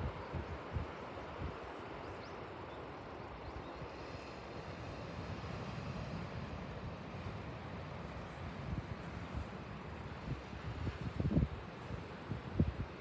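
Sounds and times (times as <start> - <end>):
wind rumbling on microphone: 0.0 - 2.3, 8.1 - 13.0.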